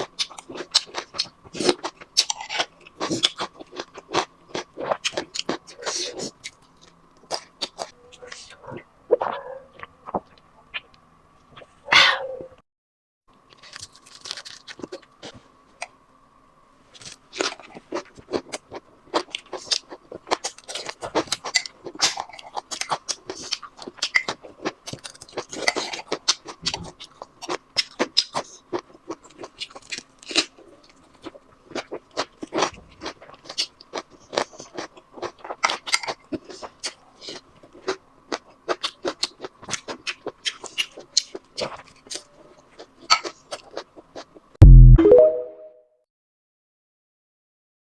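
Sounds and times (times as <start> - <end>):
chewing and lip-smacking: 17.4 - 44.4.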